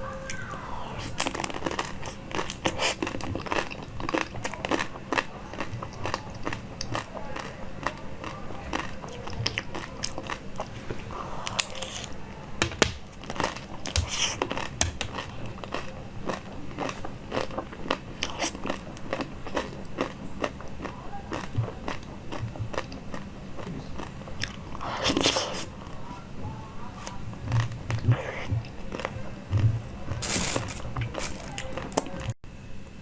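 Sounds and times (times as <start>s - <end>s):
person biting and chewing: 0.3s - 12.2s, 12.8s - 26.1s, 27.0s - 32.3s.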